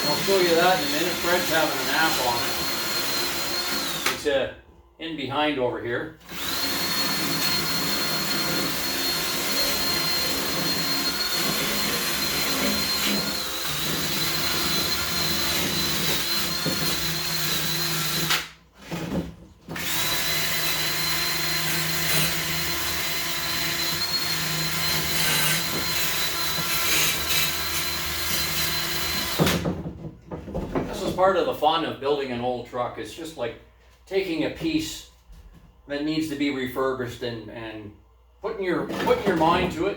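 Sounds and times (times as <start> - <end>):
power drill whining: 0.0 - 4.2, 6.2 - 19.1, 19.7 - 29.6.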